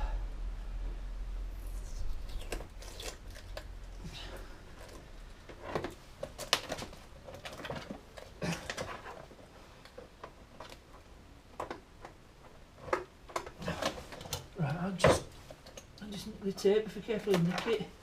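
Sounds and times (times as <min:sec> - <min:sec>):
tape peeling off plastic: 0:01.6 - 0:04.0.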